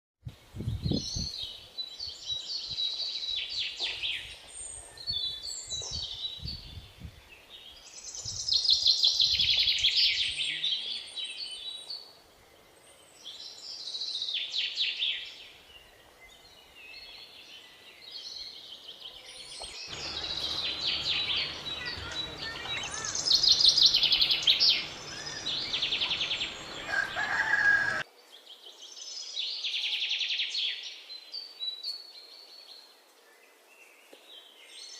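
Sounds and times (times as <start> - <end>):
steady low hum: 19.9 - 27.2
bird calling high-pitched notes: 19.9 - 28.0.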